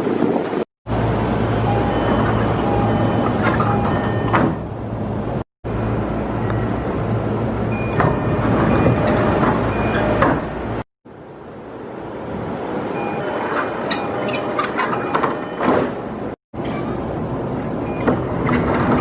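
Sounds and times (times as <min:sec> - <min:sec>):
train rumble and hum: 0:00.0 - 0:19.0.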